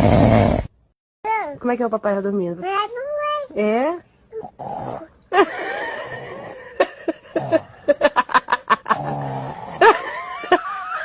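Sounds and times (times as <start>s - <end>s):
rattling snores: 0.0s - 0.7s, 4.4s - 5.2s.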